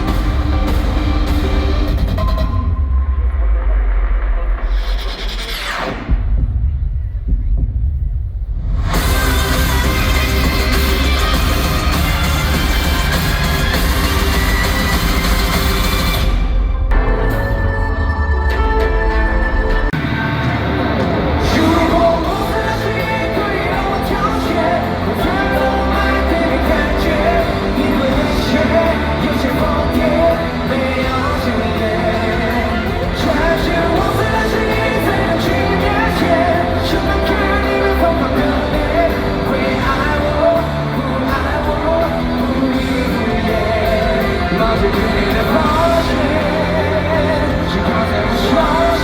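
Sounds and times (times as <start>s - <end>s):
live rock band: 0.0s - 2.9s, 8.8s - 49.0s
male vocal singing with vibrato: 21.4s - 49.0s.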